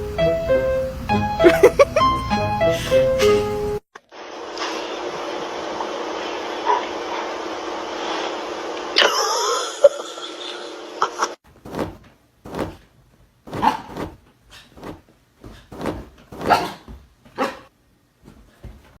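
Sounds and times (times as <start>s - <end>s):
steady hiss: 2.6s - 9.1s.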